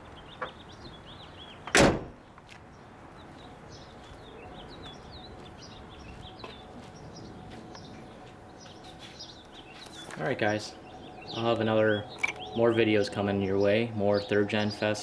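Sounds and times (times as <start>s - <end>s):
small birds chirping: 0.0s - 15.0s
car door slamming: 1.7s - 2.2s.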